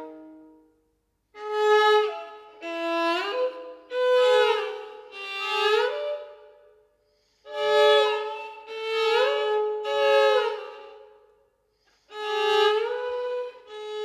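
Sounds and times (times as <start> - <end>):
solo violin: 0.0 - 14.0.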